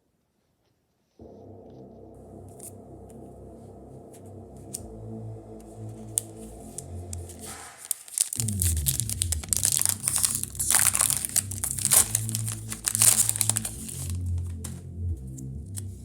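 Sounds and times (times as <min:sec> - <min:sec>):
background music: 0:01.2 - 0:16.0
foil wrapper crinkling and tearing: 0:06.1 - 0:14.8.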